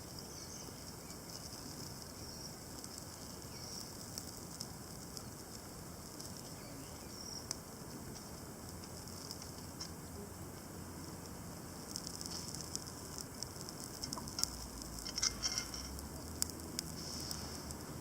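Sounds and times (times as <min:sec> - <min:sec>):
faint high chirps: 0:00.0 - 0:04.0, 0:06.3 - 0:07.6
campfire crackling and popping: 0:00.0 - 0:18.0.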